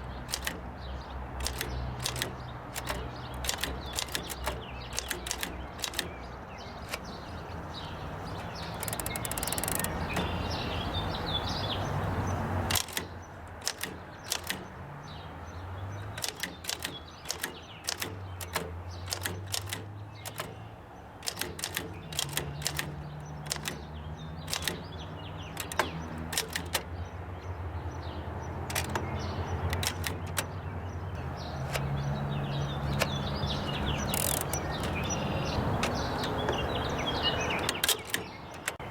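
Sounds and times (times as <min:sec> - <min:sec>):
typewriter keys clacking: 0:00.1 - 0:07.3, 0:08.1 - 0:10.6, 0:12.6 - 0:14.8, 0:16.0 - 0:27.0, 0:28.7 - 0:30.6, 0:32.8 - 0:38.9.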